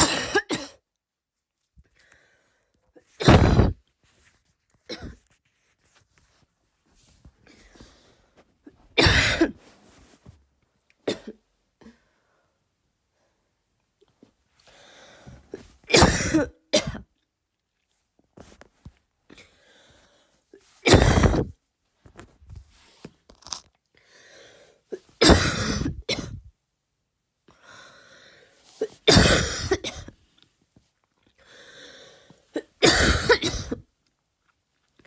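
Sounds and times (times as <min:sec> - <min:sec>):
woman coughing: 0:00.0 - 0:00.8, 0:03.2 - 0:03.8, 0:04.9 - 0:05.2, 0:09.0 - 0:09.6, 0:11.1 - 0:11.4, 0:15.9 - 0:17.1, 0:20.9 - 0:21.4, 0:25.2 - 0:26.4, 0:29.0 - 0:30.1, 0:32.6 - 0:33.8.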